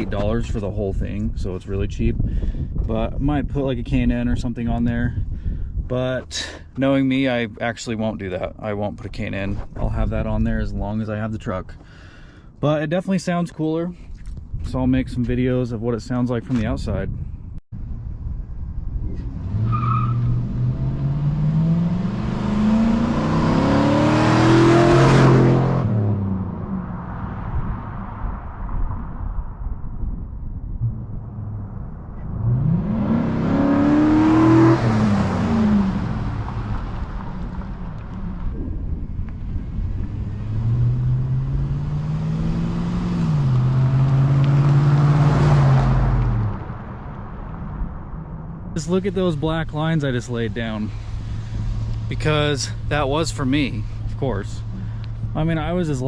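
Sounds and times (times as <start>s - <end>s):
truck engine accelerating: 17.9s - 28.8s, 30.8s - 56.0s.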